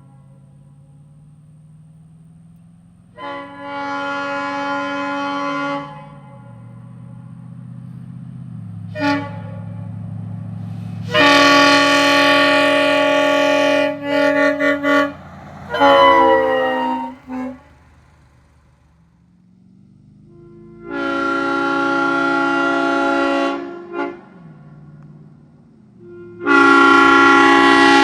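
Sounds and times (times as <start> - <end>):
locomotive air horn blasts: 0.0 - 0.8, 3.1 - 7.2, 8.8 - 19.0, 20.2 - 24.8, 26.0 - 28.0.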